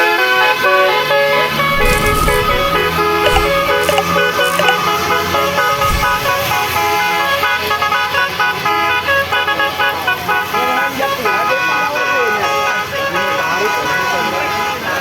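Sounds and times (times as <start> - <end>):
bus horns playing a tune: 7.1 - 15.0.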